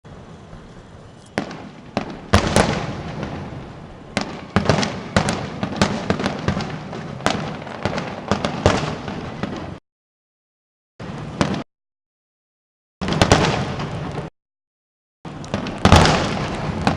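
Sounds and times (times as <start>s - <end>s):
fireworks bangs and crackling: 0.4s - 9.8s, 11.0s - 11.7s, 13.0s - 14.3s, 15.3s - 16.9s.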